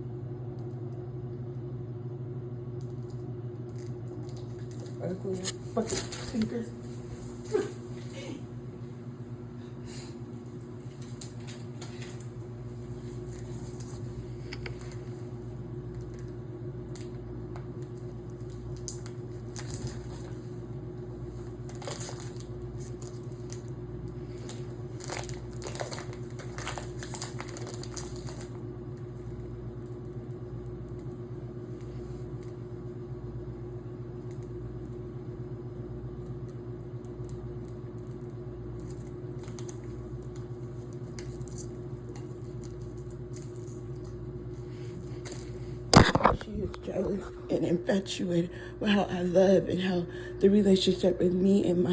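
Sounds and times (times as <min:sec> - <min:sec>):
low electrical hum: 0:00.0 - 0:51.9
small clicks and crinkling: 0:02.8 - 0:06.6, 0:15.9 - 0:20.4, 0:21.4 - 0:29.1, 0:36.2 - 0:44.2.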